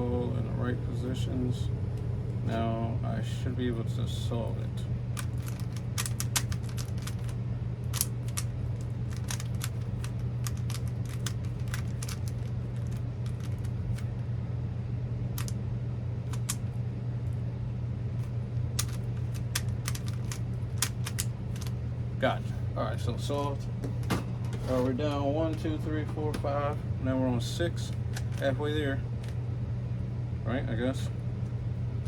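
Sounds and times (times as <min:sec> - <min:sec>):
low hum: 0:00.0 - 0:32.0
puzzle cube clicking: 0:05.2 - 0:14.1, 0:16.3 - 0:16.6, 0:18.8 - 0:21.8.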